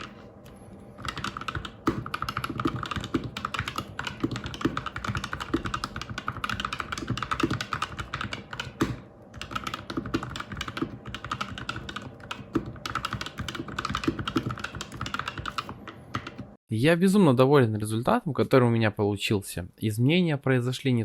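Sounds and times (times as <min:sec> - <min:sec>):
typing on mechanical keyboard: 0:01.0 - 0:16.6.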